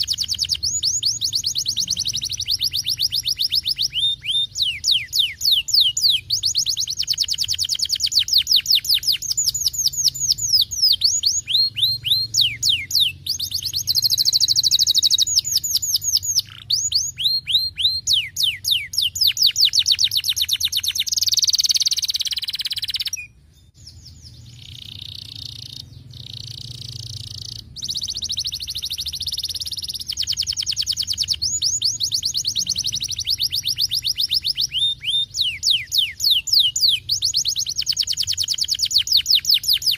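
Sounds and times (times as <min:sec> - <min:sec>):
canary singing: 0:00.0 - 0:39.9.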